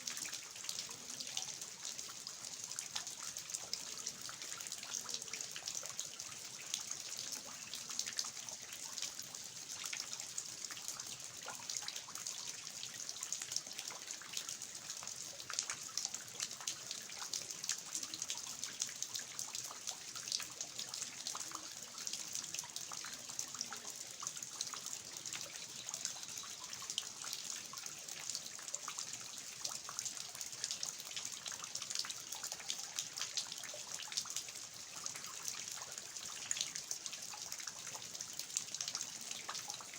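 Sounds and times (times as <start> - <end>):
water dripping from eaves: 0.0 - 39.9.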